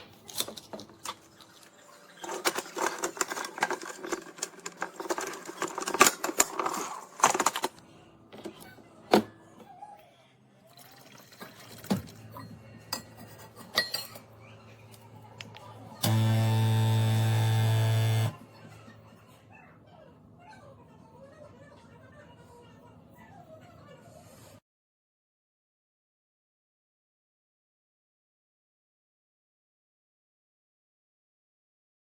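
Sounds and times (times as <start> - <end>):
objects clicking and clattering: 0.1 - 7.8.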